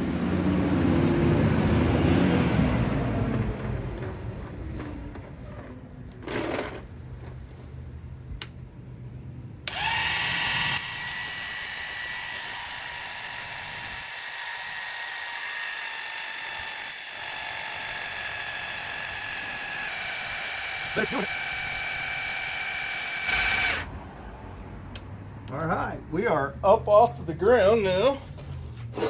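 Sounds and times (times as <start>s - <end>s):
hydraulic pump motor whining: 9.7s - 23.9s.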